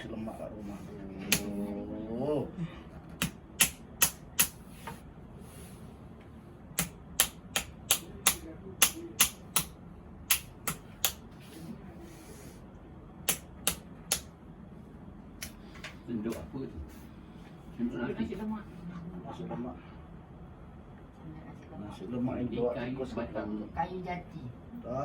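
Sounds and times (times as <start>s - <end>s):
sharp taps or clicks: 3.2s - 4.6s, 6.8s - 9.7s, 10.3s - 11.2s, 13.3s - 14.3s.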